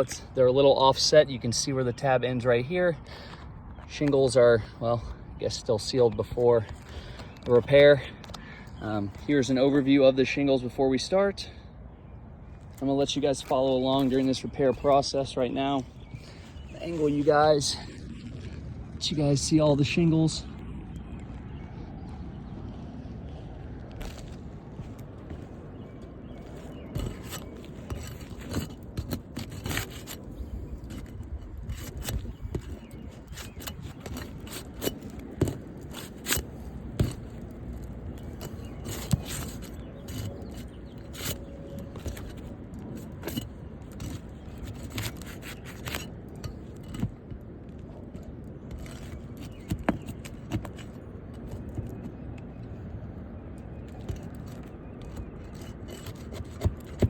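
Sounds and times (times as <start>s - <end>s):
tool scraping roof shingles: 3.1s - 9.9s, 12.7s - 18.6s, 24.0s - 52.4s, 53.6s - 57.0s
sharp clicks and knocks: 26.5s - 52.5s.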